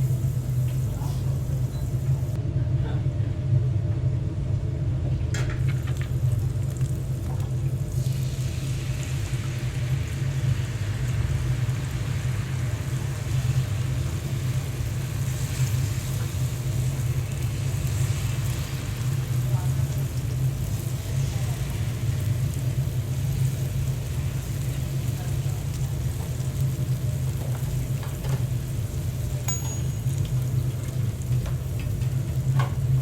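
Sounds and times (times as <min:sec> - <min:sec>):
steady low hum: 0:00.0 - 0:05.4
food sizzling on a griddle: 0:05.6 - 0:33.0.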